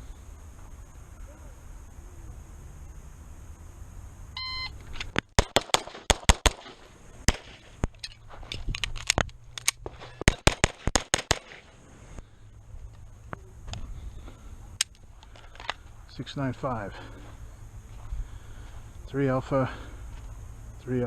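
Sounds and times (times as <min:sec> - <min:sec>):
shot timer beep: 0:04.4 - 0:04.7
rapid pistol fire: 0:05.3 - 0:07.7, 0:10.2 - 0:11.7.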